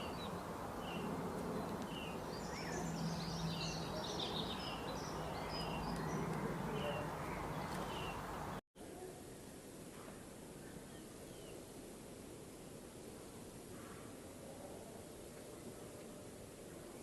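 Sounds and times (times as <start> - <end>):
small birds chirping: 0.0 - 8.6.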